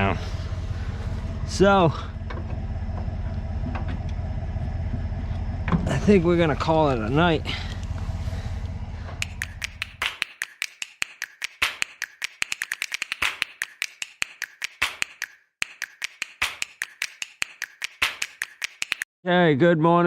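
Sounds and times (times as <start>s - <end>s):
low rumble: 0.0s - 9.2s
rapid sharp clicks: 9.2s - 19.1s.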